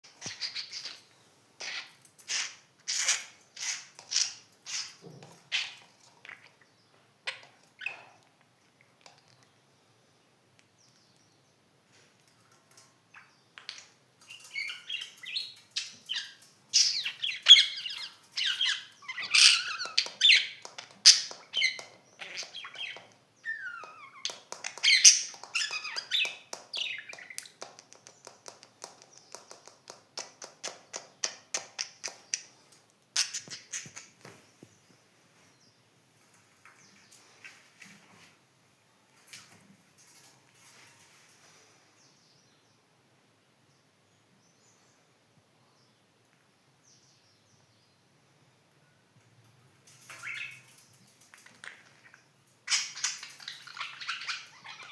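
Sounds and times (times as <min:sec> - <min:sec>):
budgerigars chirping and warbling: 0:00.1 - 0:06.5, 0:14.3 - 0:27.6, 0:50.1 - 0:50.8, 0:51.4 - 0:54.9.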